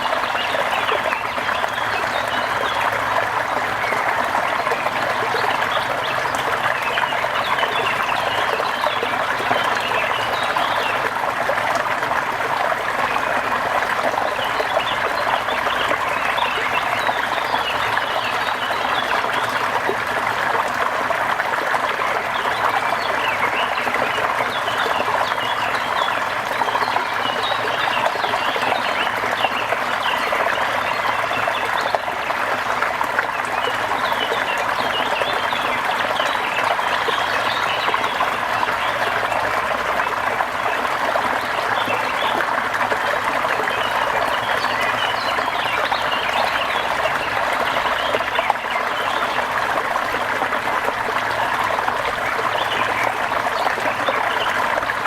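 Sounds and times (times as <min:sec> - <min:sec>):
trickling running water: 0:00.0 - 0:55.0.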